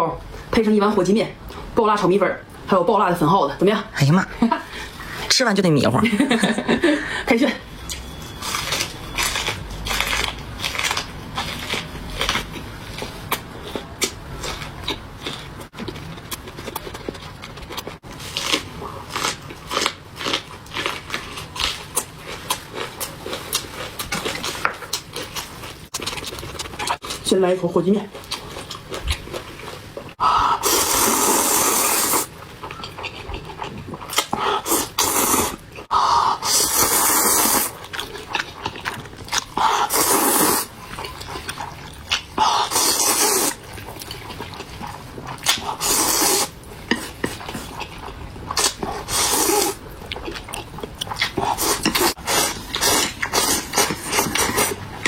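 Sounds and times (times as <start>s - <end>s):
person chewing: 7.8s - 27.4s, 28.1s - 55.0s
person slurping noodles: 30.2s - 32.3s, 34.1s - 37.8s, 39.5s - 40.8s, 42.4s - 43.6s, 45.6s - 47.8s, 48.6s - 49.8s, 51.4s - 54.9s.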